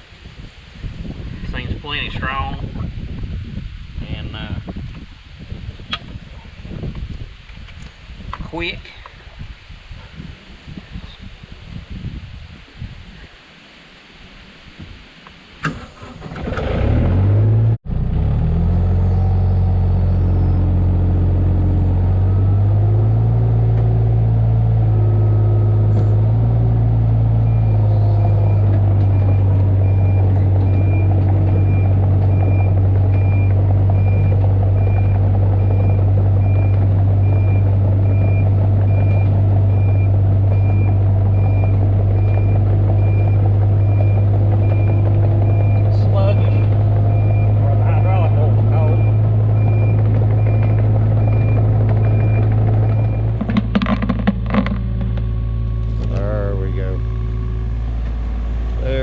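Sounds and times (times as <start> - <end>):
excavator diesel engine running: 15.9 - 59.0
high-pitched warning alarm beeping: 27.4 - 53.2.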